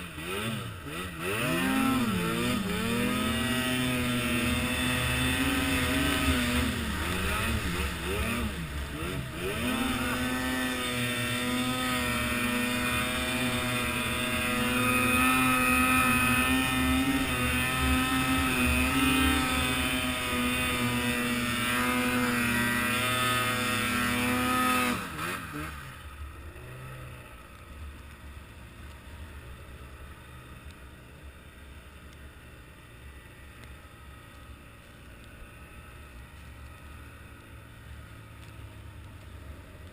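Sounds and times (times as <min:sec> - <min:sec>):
vehicle engine revving high: 0:00.0 - 0:27.1.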